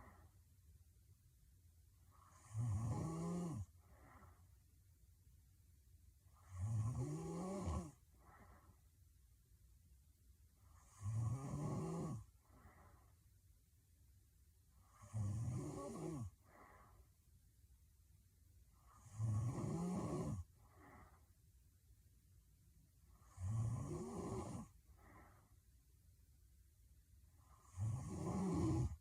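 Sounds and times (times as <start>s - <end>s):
woman snoring heavily: 2.2s - 4.2s, 6.4s - 8.0s, 10.8s - 12.8s, 14.8s - 16.8s, 18.9s - 21.0s, 23.2s - 25.3s, 27.5s - 29.0s
soft out-breath: 3.8s - 4.6s, 8.1s - 8.9s, 12.4s - 13.3s, 16.4s - 17.2s, 20.6s - 21.4s, 24.8s - 25.7s.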